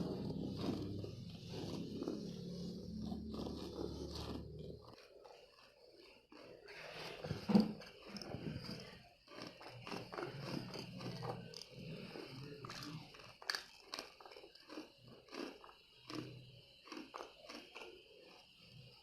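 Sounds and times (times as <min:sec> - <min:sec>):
soft chewing: 0:00.0 - 0:19.0
chewing hard candy crunches: 0:00.3 - 0:18.5.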